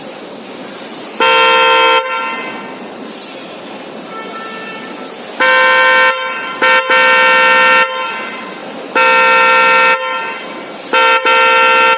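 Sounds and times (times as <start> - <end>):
electric car horn blasts: 1.2 - 2.7, 4.1 - 11.9.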